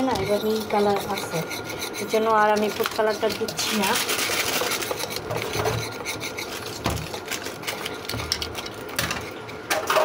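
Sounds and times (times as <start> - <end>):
rasping and scraping: 0.0 - 9.6
packet rustling and clicks: 6.5 - 9.2.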